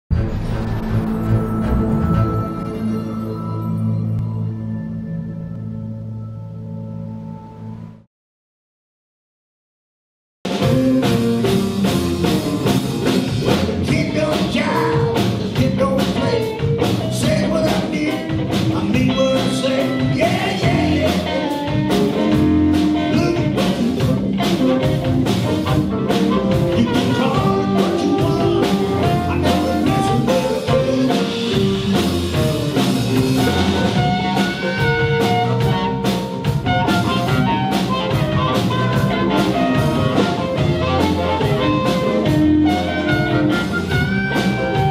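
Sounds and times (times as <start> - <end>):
blues band playing: 10.5 - 44.9
person singing: 12.3 - 24.9, 26.2 - 32.4.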